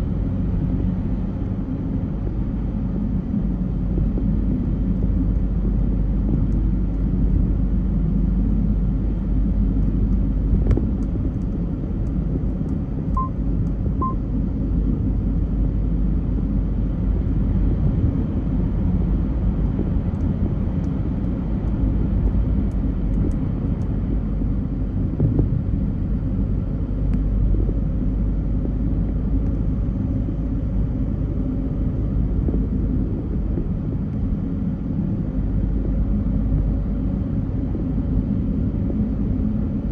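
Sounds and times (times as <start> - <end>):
car engine and road noise: 0.0 - 39.9
short beeps: 13.2 - 13.4.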